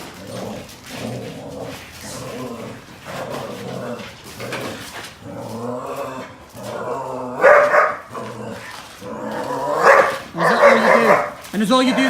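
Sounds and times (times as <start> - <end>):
dog growling low: 0.0 - 12.0
dog barking loudly: 7.3 - 8.8, 9.6 - 12.0.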